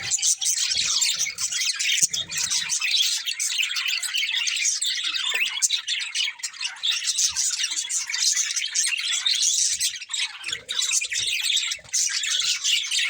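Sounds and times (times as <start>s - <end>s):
budgerigars chirping: 0.0s - 13.0s.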